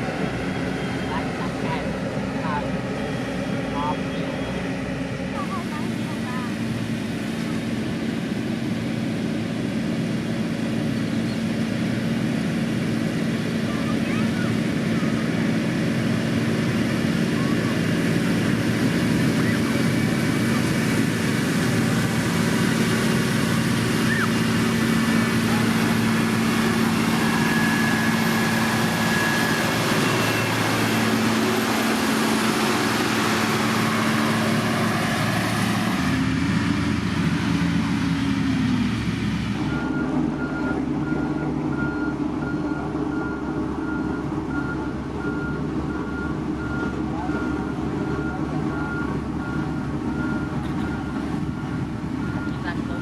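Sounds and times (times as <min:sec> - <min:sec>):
heavy machine engine running: 0:00.0 - 0:53.0
reversing alarm beeping: 0:25.3 - 0:32.4, 0:39.6 - 0:53.0.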